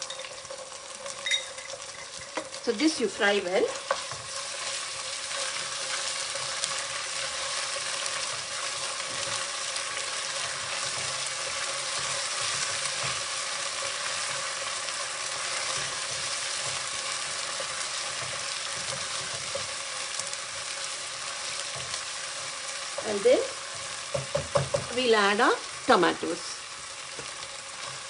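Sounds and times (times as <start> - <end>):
spoon scraping pan: 0.0 - 2.6, 3.3 - 14.7, 15.3 - 25.1
onions sizzling in hot oil: 0.0 - 28.0.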